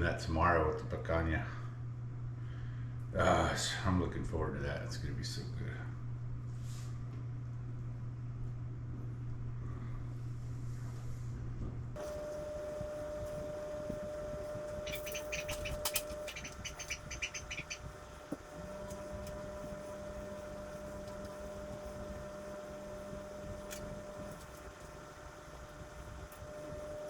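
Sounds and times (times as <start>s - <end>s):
faint steady hum: 0.0s - 27.0s
small bird chirping: 14.5s - 18.2s.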